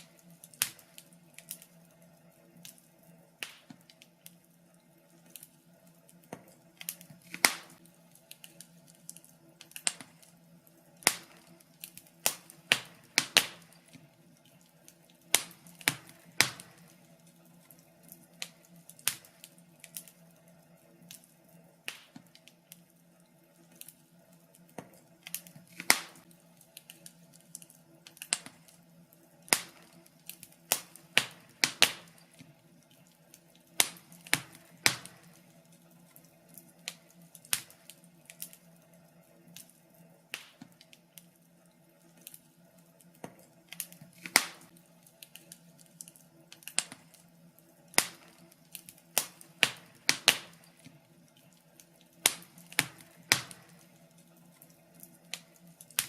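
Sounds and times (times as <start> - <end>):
faint steady hum: 0.0 - 56.0
wood fire crackling: 0.0 - 56.0.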